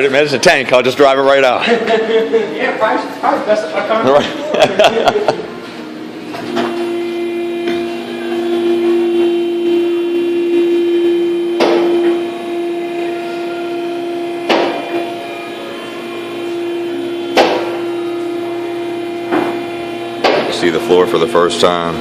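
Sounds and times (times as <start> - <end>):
lift pump motor whining: 5.5 - 22.0.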